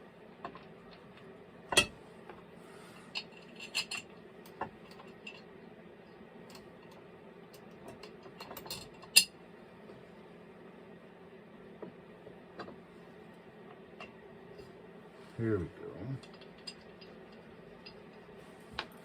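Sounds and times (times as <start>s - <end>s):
metal tools clinking on a workbench: 3.1s - 4.1s, 16.2s - 18.2s.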